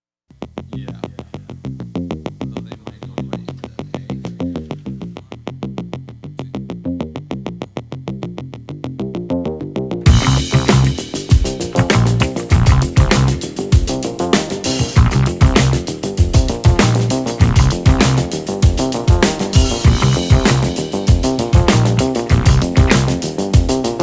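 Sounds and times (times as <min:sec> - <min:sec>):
electronic track with drums and bass: 0:10.1 - 0:24.0
repeating synthesizer notes: 0:10.1 - 0:24.0.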